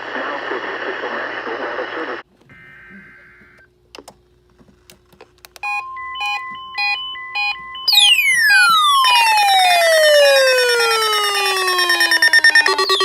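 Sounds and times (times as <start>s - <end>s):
tone sweeping down in pitch: 5.6s - 13.0s
short high electronic beeps: 11.8s - 13.0s.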